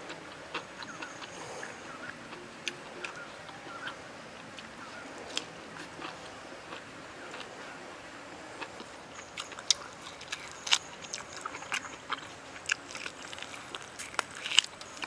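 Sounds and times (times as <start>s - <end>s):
crisp bites and chewing: 9.2s - 15.0s.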